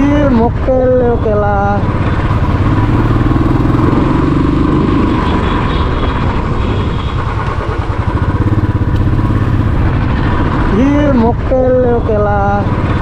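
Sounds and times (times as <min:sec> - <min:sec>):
motorcycle engine running: 0:00.7 - 0:13.0.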